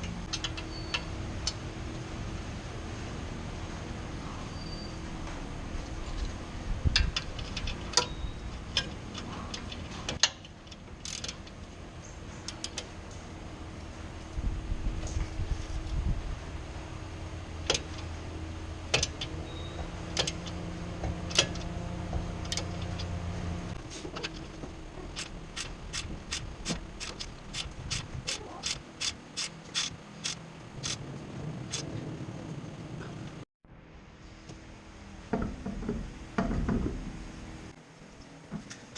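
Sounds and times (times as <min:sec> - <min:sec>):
steady low rumble: 0:00.0 - 0:38.1
hand tools clicking and tapping: 0:17.7 - 0:18.1, 0:18.9 - 0:23.1, 0:24.2 - 0:31.0.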